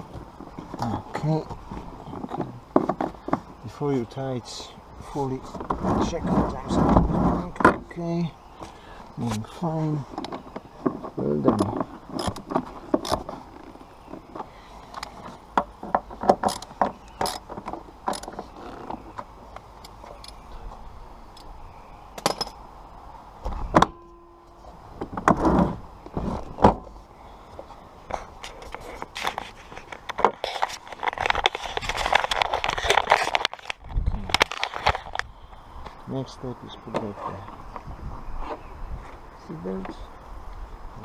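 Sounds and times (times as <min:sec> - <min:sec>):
rustling scrape: 0:05.3 - 0:07.6, 0:27.7 - 0:35.2.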